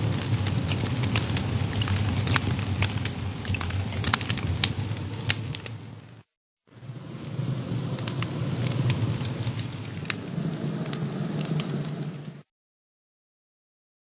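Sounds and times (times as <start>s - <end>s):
campfire crackling and popping: 0.0s - 12.4s
high wavering squeaks: 0.2s - 0.6s, 4.7s - 5.0s, 9.6s - 10.0s, 11.4s - 11.9s.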